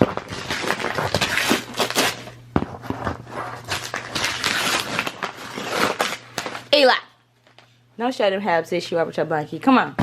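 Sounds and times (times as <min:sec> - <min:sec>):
wrapping paper tearing and crumpling: 0:00.0 - 0:06.9.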